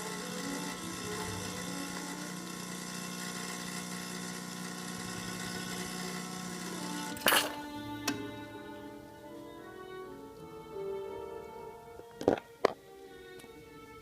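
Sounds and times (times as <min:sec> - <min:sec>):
espresso machine pump humming: 0:00.0 - 0:08.3.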